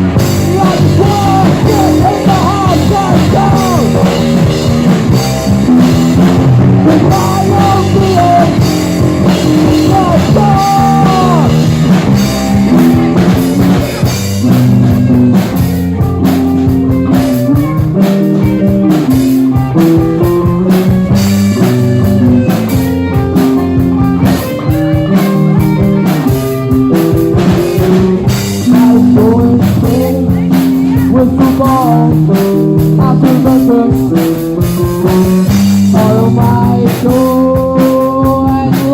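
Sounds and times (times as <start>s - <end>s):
electric guitar bending notes: 0.0s - 38.9s
live rock band playing: 0.0s - 38.9s.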